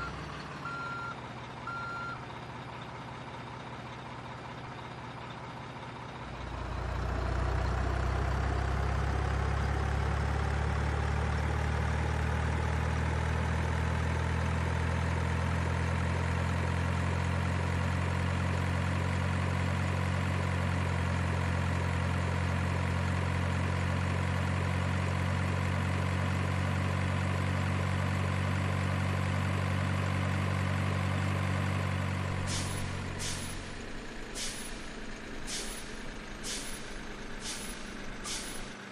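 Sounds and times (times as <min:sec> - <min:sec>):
simulated diesel engine: 0:00.0 - 0:38.9
air brake hisses: 0:32.4 - 0:38.8.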